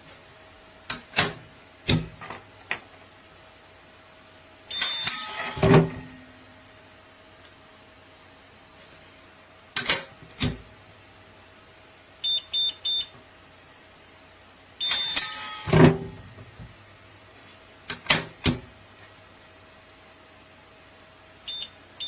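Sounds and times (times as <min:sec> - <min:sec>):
high electronic keypad beeps: 0:04.7 - 0:05.1, 0:12.2 - 0:13.1, 0:14.8 - 0:15.2, 0:21.5 - 0:21.8.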